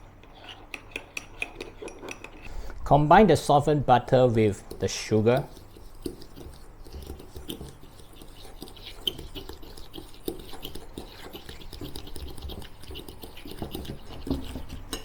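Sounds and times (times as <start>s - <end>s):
scraping and squishing in a bowl: 0.0s - 3.0s, 4.1s - 15.0s
utensil tapping a bowl: 4.7s - 15.0s.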